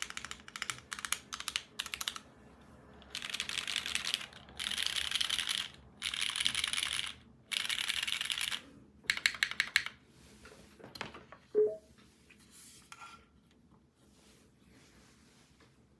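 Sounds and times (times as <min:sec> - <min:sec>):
fast typing on mechanical keyboard: 0:00.0 - 0:02.3, 0:03.0 - 0:10.0.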